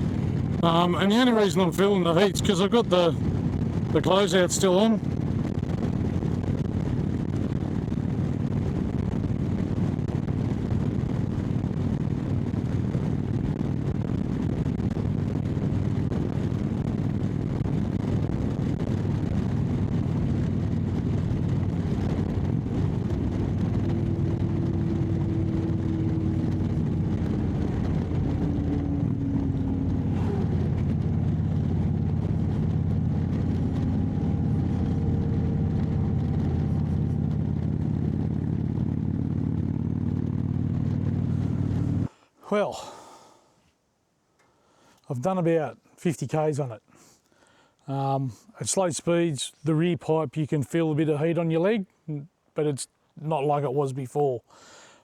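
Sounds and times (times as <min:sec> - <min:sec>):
wind and road noise: 0:00.0 - 0:42.2
motorcycle engine cruising: 0:11.2 - 0:42.1.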